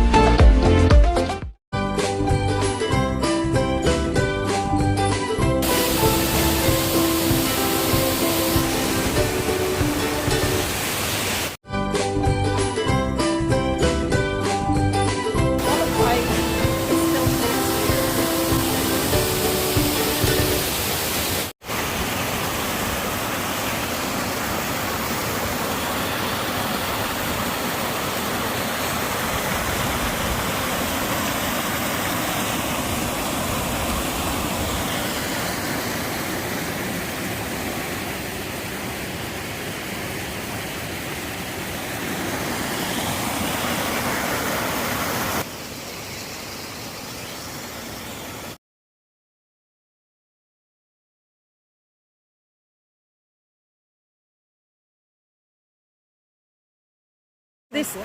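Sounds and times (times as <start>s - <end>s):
waterfall rushing: 5.6s - 11.6s, 15.6s - 48.6s.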